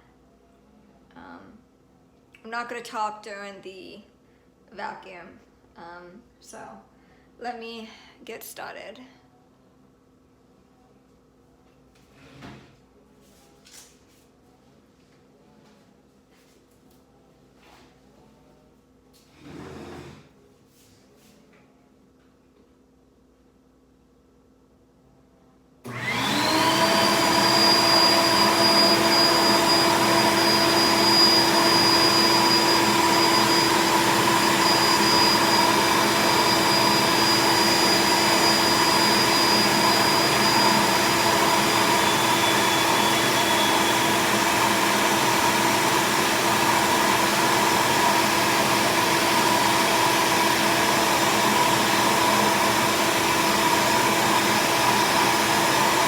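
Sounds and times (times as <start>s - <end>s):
vacuum cleaner motor whine: 25.8s - 56.0s.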